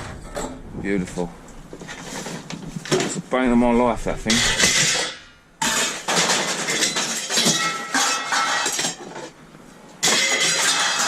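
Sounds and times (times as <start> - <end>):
scrap metal clattering: 1.8 - 3.3, 4.3 - 9.4, 10.0 - 11.0.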